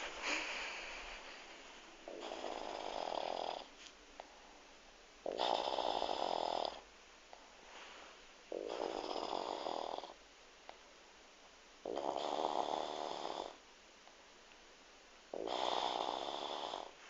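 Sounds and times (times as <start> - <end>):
woman snoring: 2.1 - 3.7, 5.3 - 6.8, 8.5 - 10.2, 11.9 - 13.6, 15.3 - 17.0.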